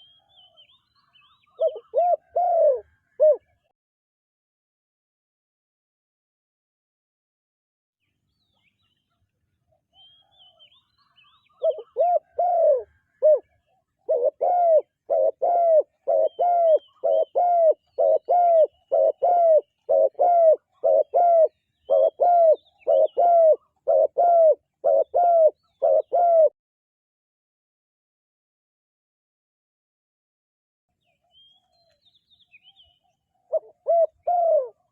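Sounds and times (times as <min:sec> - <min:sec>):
dove cooing: 0:00.0 - 0:03.6, 0:10.2 - 0:26.6, 0:33.5 - 0:34.9
faint high bird chirps: 0:00.0 - 0:03.7, 0:08.0 - 0:26.3, 0:30.9 - 0:34.9.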